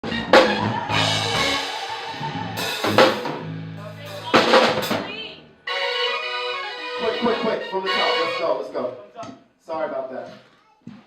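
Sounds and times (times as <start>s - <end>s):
low bass notes: 0.0s - 5.6s
rock band playing: 0.0s - 8.6s.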